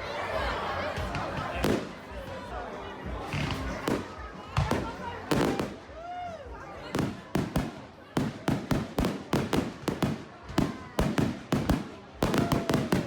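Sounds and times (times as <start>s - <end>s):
fireworks exploding: 1.0s - 2.2s, 3.2s - 6.0s, 6.8s - 13.0s.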